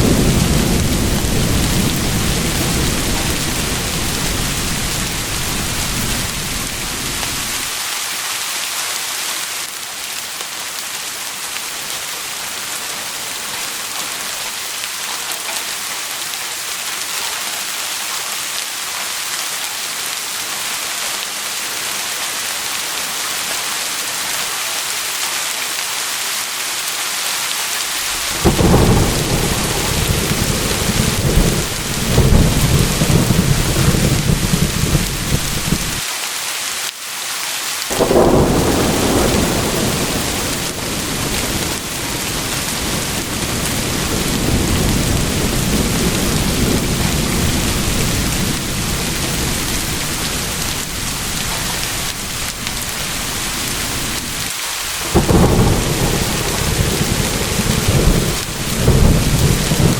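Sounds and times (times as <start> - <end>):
deep thunder rumble: 0.0 - 7.7, 28.0 - 36.0, 37.9 - 59.9
heavy rain hiss: 0.0 - 59.9.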